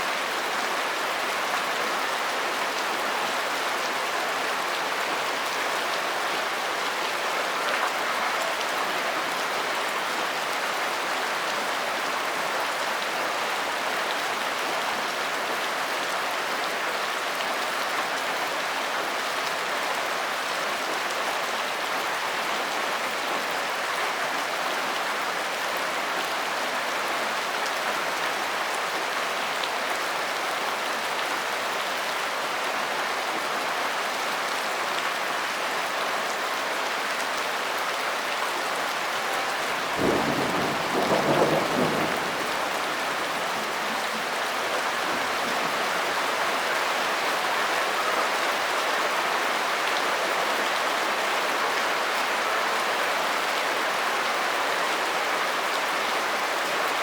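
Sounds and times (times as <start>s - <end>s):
steady rain: 0.0s - 57.0s
thunder rumble: 39.8s - 43.8s.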